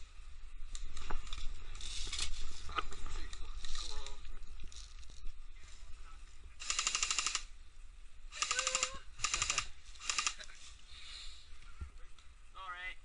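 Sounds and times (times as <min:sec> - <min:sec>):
airsoft guns firing full auto: 0:06.6 - 0:07.4, 0:08.4 - 0:10.4.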